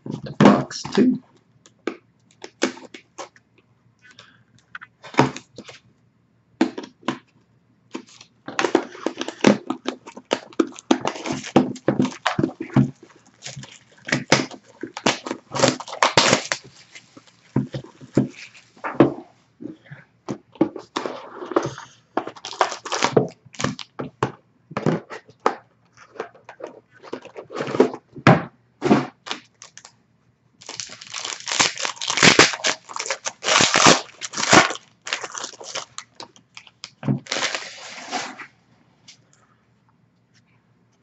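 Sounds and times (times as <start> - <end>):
plastic wrapping tearing and crinkling: 8.0 - 18.9, 20.9 - 23.9, 29.1 - 29.9, 30.6 - 38.5.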